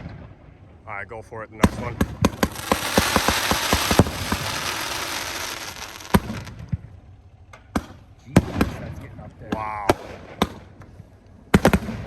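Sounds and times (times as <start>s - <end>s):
firework bangs: 1.6s - 6.8s
firework crackle: 2.2s - 6.7s.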